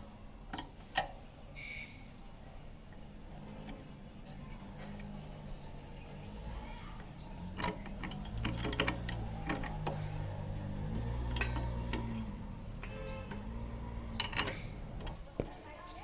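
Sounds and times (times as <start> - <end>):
bird chirping: 0.6 - 0.9, 1.6 - 2.2, 5.5 - 8.0, 9.3 - 14.8, 15.5 - 16.0
scooter engine running: 3.3 - 15.5.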